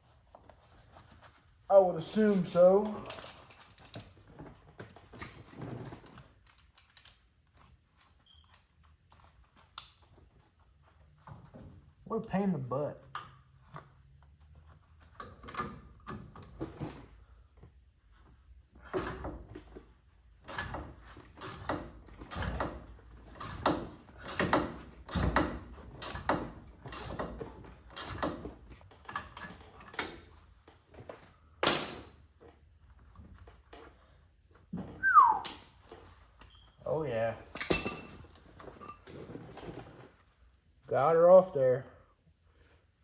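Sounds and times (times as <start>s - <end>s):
short falling squeak: 35.0s - 35.5s.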